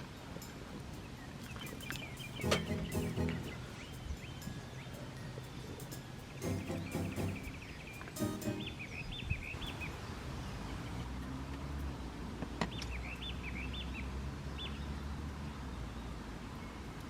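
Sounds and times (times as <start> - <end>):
songbird singing whistled notes: 0.9 - 9.9.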